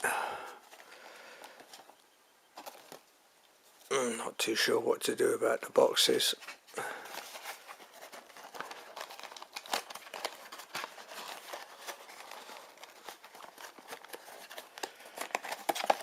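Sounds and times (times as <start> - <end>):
cardboard packaging crinkling: 2.6 - 3.1, 6.3 - 16.0.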